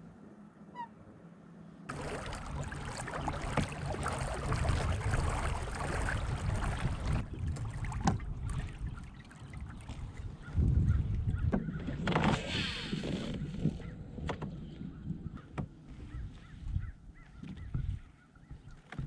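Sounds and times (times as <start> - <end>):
small water splashes: 1.9 - 11.2
low rumble: 1.9 - 11.4
wind on microphone: 1.9 - 18.7.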